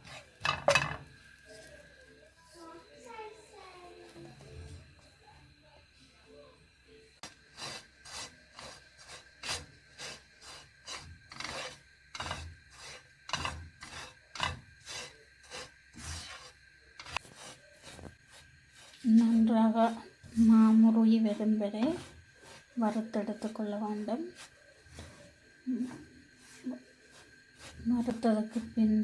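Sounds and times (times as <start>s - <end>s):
spatula scraping a dry wok: 0.0s - 1.1s, 7.2s - 29.0s.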